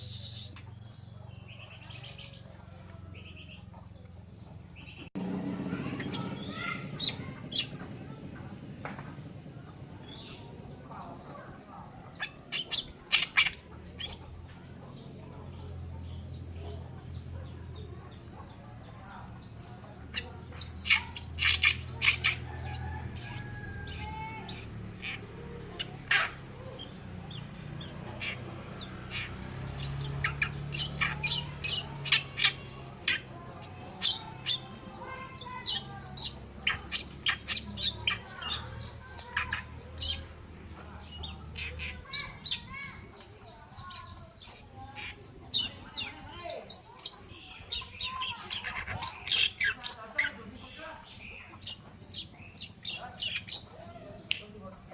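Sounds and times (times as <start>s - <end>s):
reed warbler harsh chattering song: 0.0s - 54.9s.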